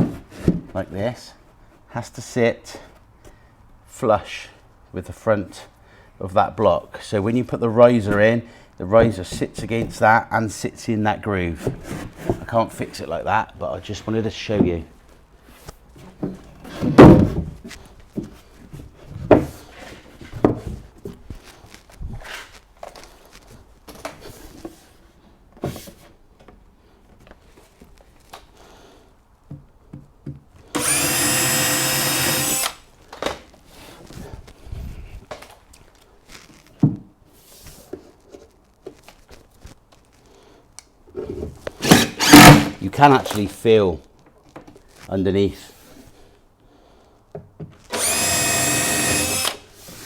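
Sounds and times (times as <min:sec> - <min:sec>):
wooden knocks and thuds: 0:16.0 - 0:18.4, 0:20.3 - 0:20.9.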